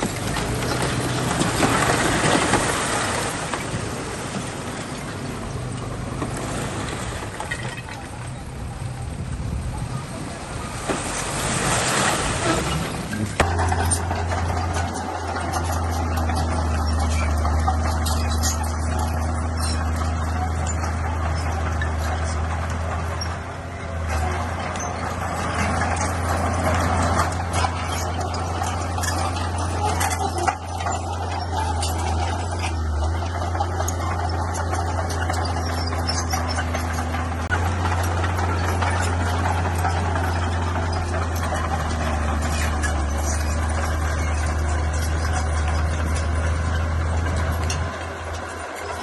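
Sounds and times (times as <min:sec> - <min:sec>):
bulldozer diesel engine: 0:00.0 - 0:49.0
metallic clanks and knocks: 0:12.4 - 0:49.0.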